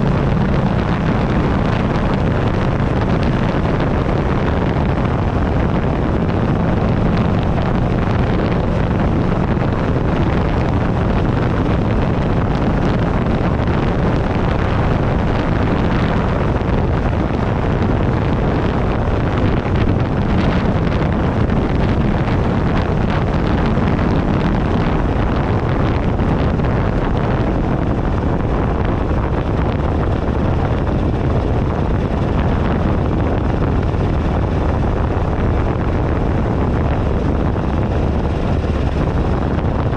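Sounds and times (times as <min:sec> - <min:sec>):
motorcycle engine running: 0:00.0 - 0:39.9
wind noise on microphone: 0:00.0 - 0:39.9.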